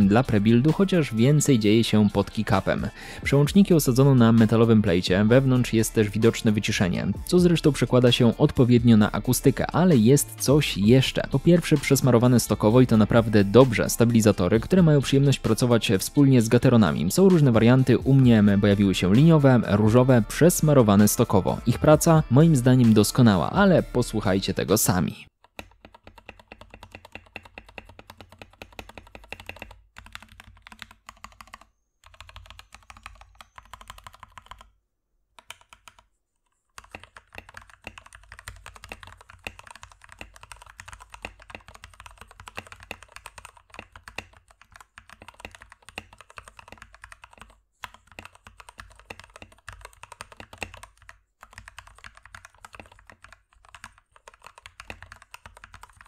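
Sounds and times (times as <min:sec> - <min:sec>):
mechanical keyboard typing: 0:25.4 - 0:34.7, 0:35.4 - 0:36.0, 0:36.8 - 0:56.0.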